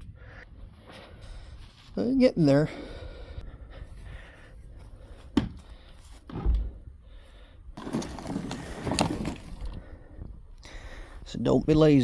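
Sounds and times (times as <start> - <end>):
wooden pieces clattering and scraping: 7.8 - 9.9.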